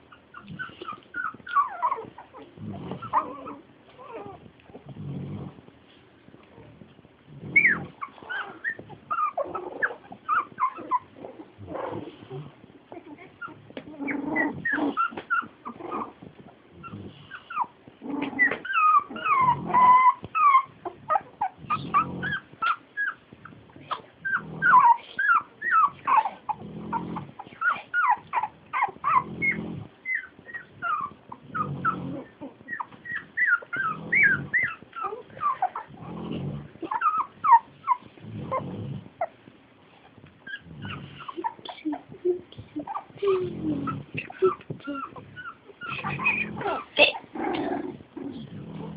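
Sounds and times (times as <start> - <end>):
puppies whimpering and squealing: 0.0 - 5.6, 7.4 - 48.9
pig snoring: 2.5 - 5.7, 13.9 - 22.8, 23.8 - 39.3, 40.4 - 41.6, 42.8 - 48.9.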